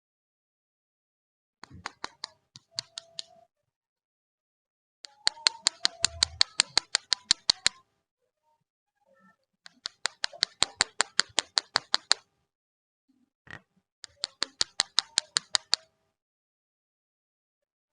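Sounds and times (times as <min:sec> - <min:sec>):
rapid sharp clicks: 0:05.1 - 0:07.8, 0:09.7 - 0:12.2, 0:14.0 - 0:15.9.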